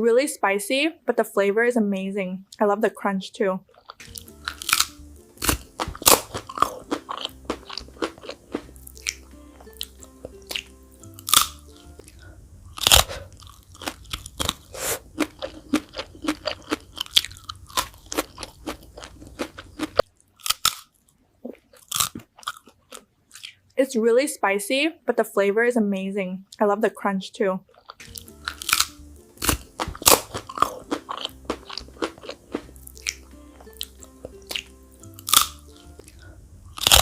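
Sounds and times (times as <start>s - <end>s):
crunching and chewing: 3.7s - 23.7s, 27.7s - 37.0s
soft background music: 4.0s - 14.6s, 15.2s - 20.1s, 28.0s - 37.0s.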